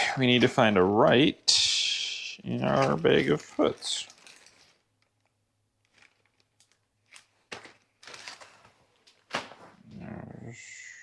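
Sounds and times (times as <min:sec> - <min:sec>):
rummaging rustles: 0:02.5 - 0:09.8.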